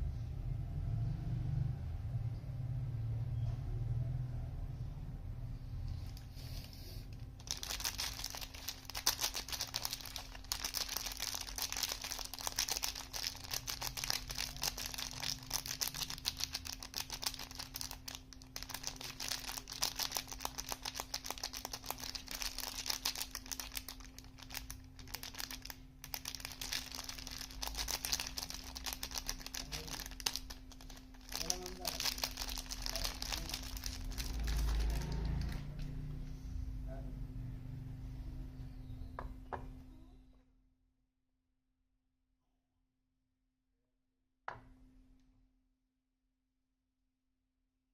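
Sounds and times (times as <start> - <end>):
soap packaging crackling: 7.4 - 35.6.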